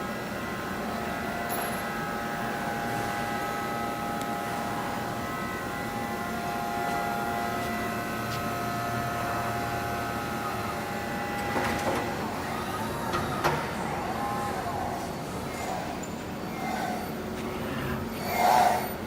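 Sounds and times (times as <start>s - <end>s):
machine whine: 0.0s - 19.0s.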